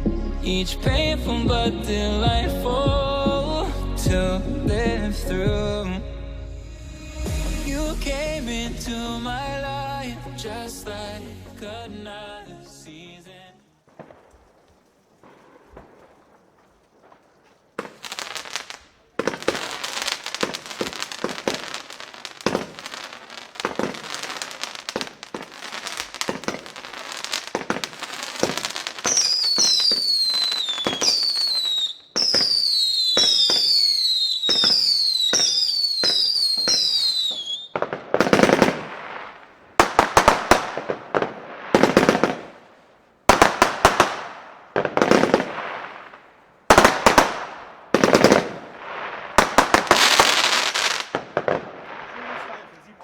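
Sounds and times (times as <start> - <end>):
firework crackling: 6.6 - 11.4, 12.1 - 53.0
firework salvo shots: 13.8 - 53.0
falling firework whistles: 15.2 - 41.0, 45.0 - 52.5.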